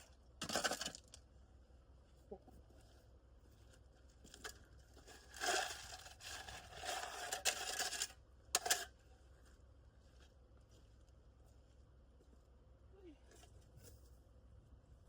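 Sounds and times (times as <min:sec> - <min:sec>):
rake scraping gravel: 0:04.3 - 0:09.0.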